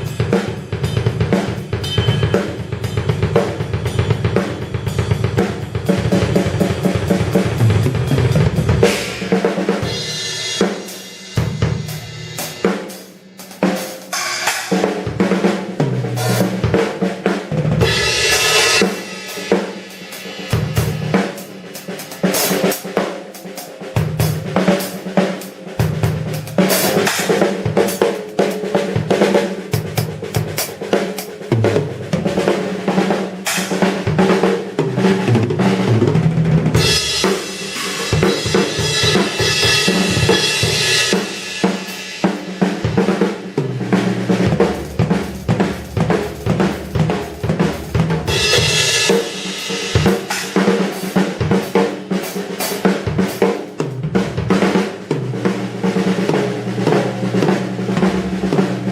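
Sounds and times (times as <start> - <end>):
drum kit played solo: 0.0 - 58.9
cymbal wash ringing: 1.8 - 3.0.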